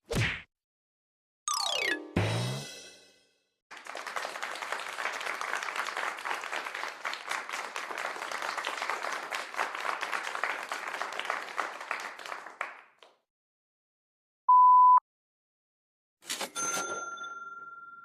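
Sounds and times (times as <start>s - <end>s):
audience applause: 3.7s - 13.0s.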